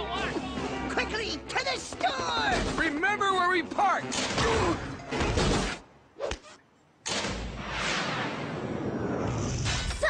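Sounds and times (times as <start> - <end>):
background music: 0.0 - 6.2.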